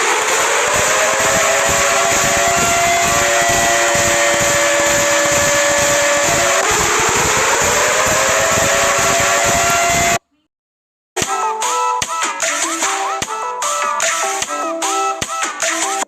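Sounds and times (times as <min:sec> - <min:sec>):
emergency alert siren tones: 0:00.0 - 0:10.2
heavy rumbling noise: 0:00.0 - 0:10.2.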